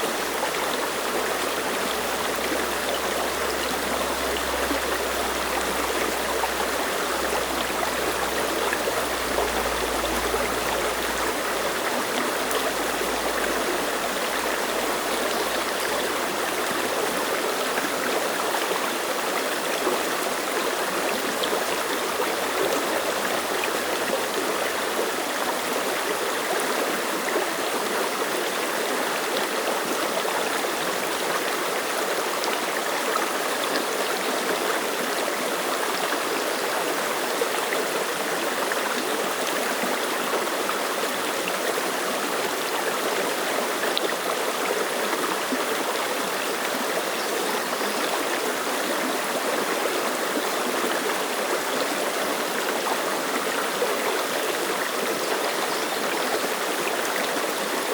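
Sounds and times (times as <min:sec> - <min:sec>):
stream flowing over rocks: 0:00.0 - 0:57.9.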